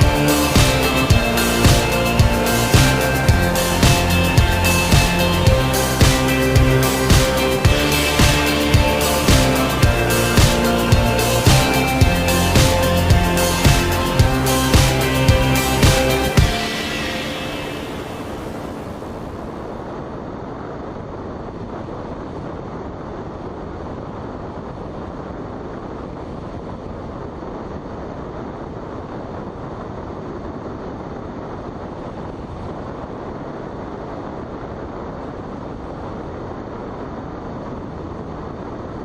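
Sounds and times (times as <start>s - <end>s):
airflow rushing: 0.0s - 20.1s
plane engine drone: 0.0s - 21.2s.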